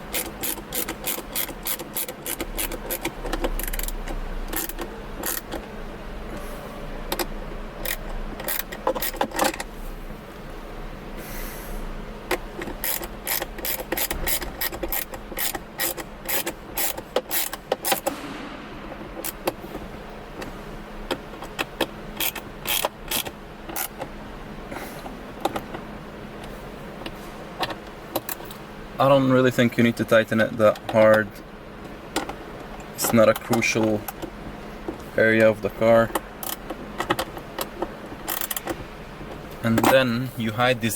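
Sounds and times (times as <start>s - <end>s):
hand ratchet clicking: 0.1s - 5.6s, 7.1s - 9.6s, 12.6s - 18.1s, 21.5s - 24.0s, 36.1s - 38.8s.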